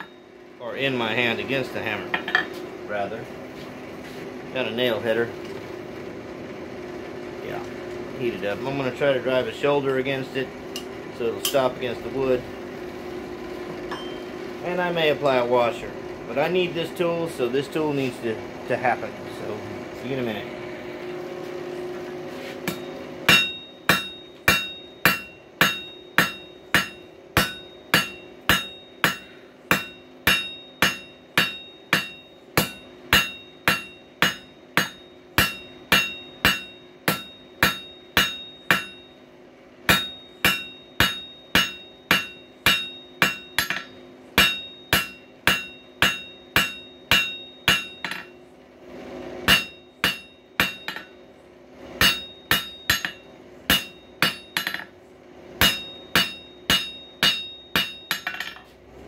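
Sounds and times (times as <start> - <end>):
hammer striking steel on anvil: 0.0 - 0.2, 10.8 - 11.7, 13.9 - 14.3, 22.6 - 39.2, 39.9 - 48.4, 49.4 - 51.2, 52.0 - 55.0, 55.6 - 58.7
steady hum: 0.0 - 59.0.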